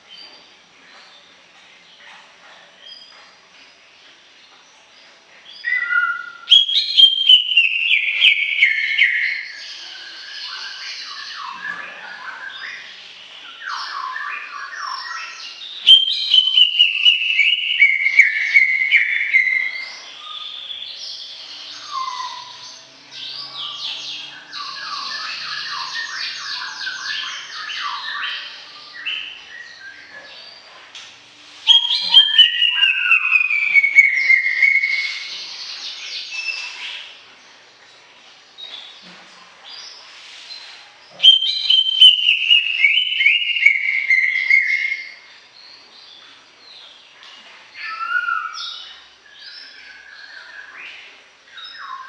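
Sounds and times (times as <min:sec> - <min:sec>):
bird singing whistles and twitters: 0:05.5 - 0:30.1, 0:31.6 - 0:37.1, 0:41.1 - 0:45.3, 0:47.7 - 0:52.0.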